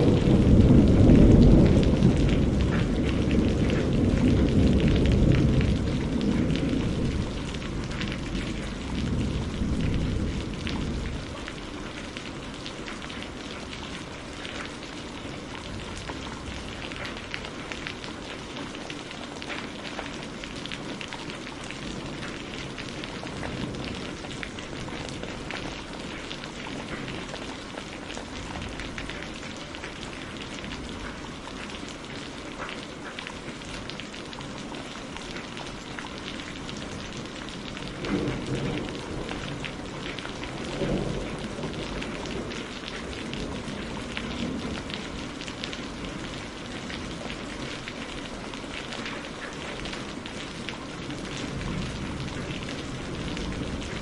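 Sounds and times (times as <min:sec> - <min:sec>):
thunder rumbling: 0:00.0 - 0:18.4, 0:19.5 - 0:31.4, 0:36.4 - 0:48.8, 0:50.0 - 0:54.0
heavy rain falling: 0:00.0 - 0:54.0.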